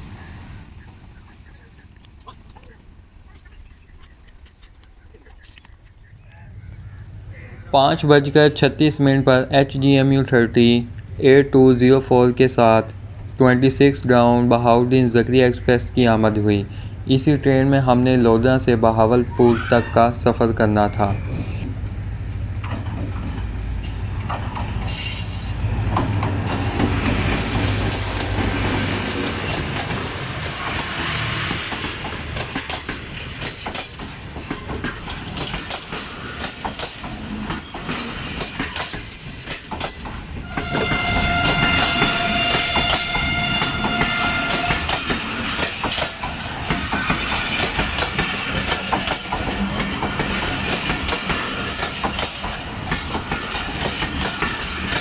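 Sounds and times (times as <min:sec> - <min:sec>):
diesel locomotive low hum: 0:00.0 - 0:55.0
train wheels clicking over rails: 0:20.5 - 0:55.0
train horn blast: 0:40.4 - 0:45.0.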